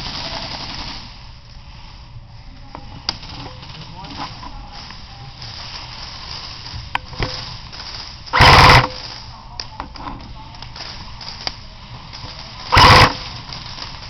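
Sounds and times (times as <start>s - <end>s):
airsoft gun burst: 0.0s - 1.3s, 7.2s - 9.1s, 12.2s - 14.0s.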